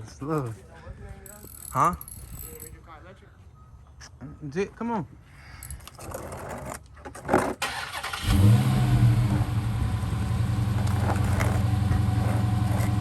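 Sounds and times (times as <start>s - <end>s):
car engine starting and idling: 7.6s - 13.0s.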